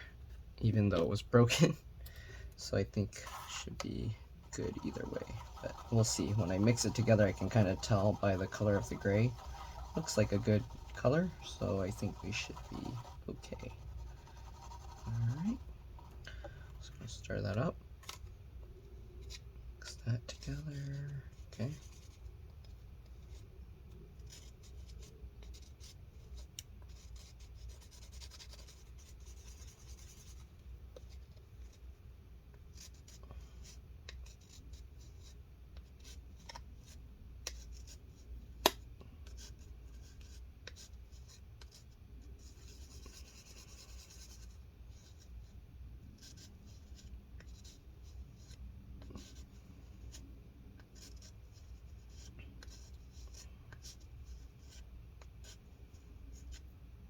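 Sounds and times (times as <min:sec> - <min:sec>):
epoxy being stirred: 0:03.1 - 0:17.2.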